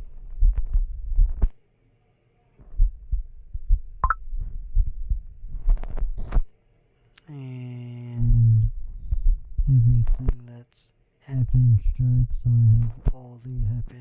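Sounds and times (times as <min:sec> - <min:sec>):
man humming: 0:07.3 - 0:08.7, 0:09.7 - 0:10.4, 0:11.4 - 0:14.0.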